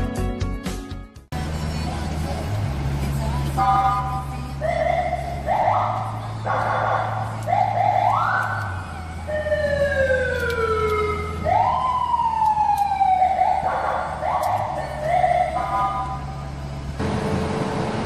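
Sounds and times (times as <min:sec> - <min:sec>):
vehicle siren whoops and wails: 0:03.6 - 0:16.4.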